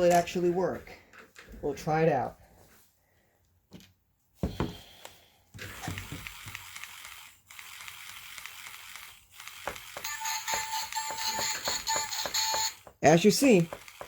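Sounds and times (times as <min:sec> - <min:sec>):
toy gear motor rattling: 0:05.6 - 0:14.0
tinny toy song: 0:10.0 - 0:13.7.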